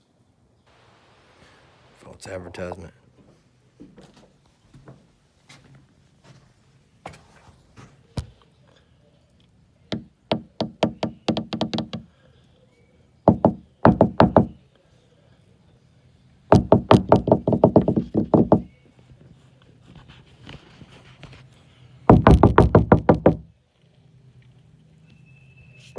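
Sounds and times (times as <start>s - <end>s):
rapid knocking: 13.3s - 14.6s, 16.5s - 18.7s, 22.1s - 23.4s.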